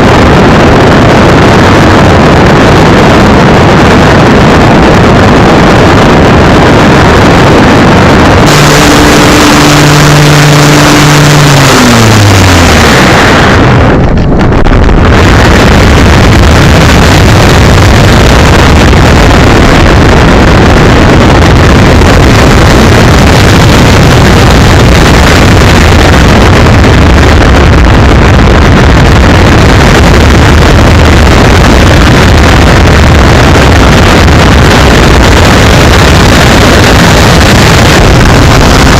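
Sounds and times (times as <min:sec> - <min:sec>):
wind and propeller rush: 0:00.0 - 0:38.9
electric motor whine: 0:04.8 - 0:38.9.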